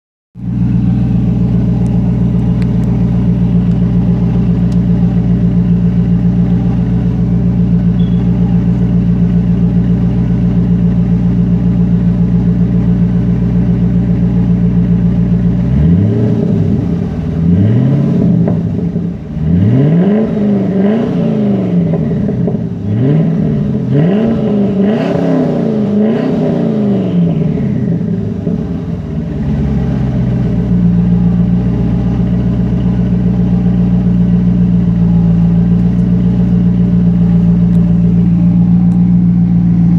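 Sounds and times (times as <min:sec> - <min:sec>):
car engine idling: 0:00.4 - 0:39.9
turbo whistle: 0:08.0 - 0:08.4
engine revving: 0:14.1 - 0:39.9.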